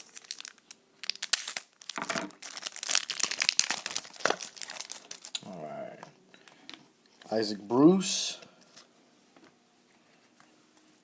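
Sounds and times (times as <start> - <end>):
foil wrapper crinkling and tearing: 0.0 - 5.4.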